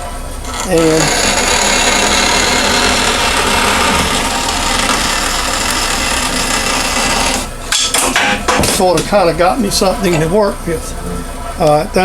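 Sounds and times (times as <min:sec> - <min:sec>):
bandsaw cutting plastic: 0:00.0 - 0:08.4.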